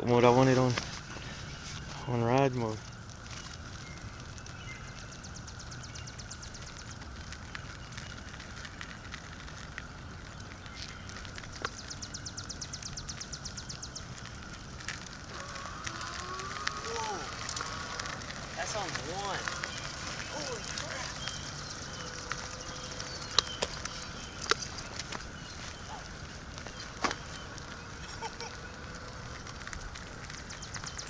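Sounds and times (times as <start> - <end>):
tyres rolling: 6.9 - 31.0
bicycle freewheel ticking: 14.4 - 24.6
electric motor whine: 15.3 - 25.3.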